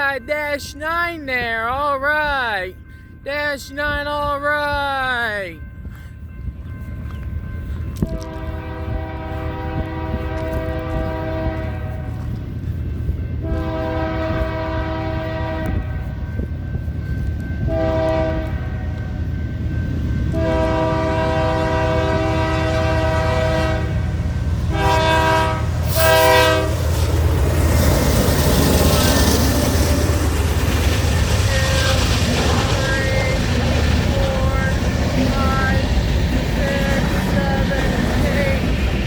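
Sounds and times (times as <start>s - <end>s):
low rumble of train: 0.0s - 4.6s, 5.4s - 39.0s
locomotive air horn blowing: 8.1s - 12.3s, 13.4s - 16.1s, 17.7s - 18.8s, 20.4s - 24.1s, 24.7s - 26.8s.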